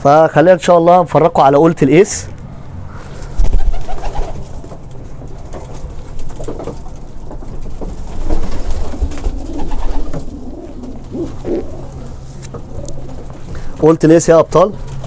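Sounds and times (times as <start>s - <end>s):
steady low hum: 1.6s - 15.0s
pigeons cooing: 2.8s - 13.9s.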